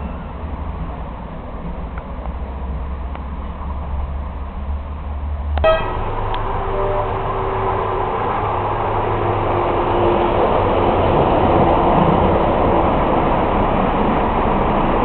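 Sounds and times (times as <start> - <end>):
train running rush: 0.0 - 15.0
miniature train whistle toot: 5.6 - 6.1.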